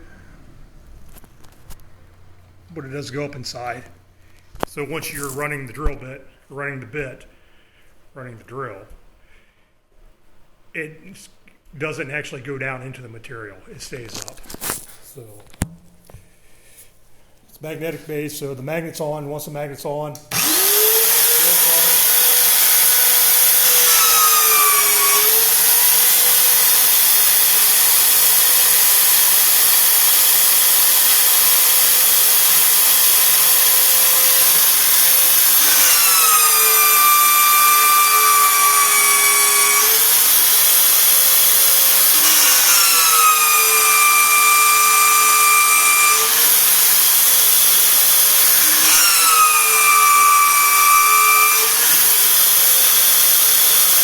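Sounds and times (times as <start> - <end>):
drill bit squealing in steel: 20.3 - 54.0
magnetic drill motor whine: 20.3 - 54.0.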